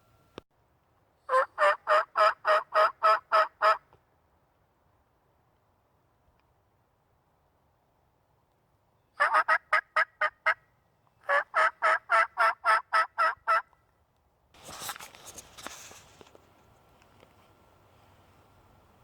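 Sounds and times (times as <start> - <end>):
turkey call hen yelps: 1.3 - 3.8, 9.2 - 10.6, 11.2 - 13.7
rustling scrape: 14.6 - 18.4.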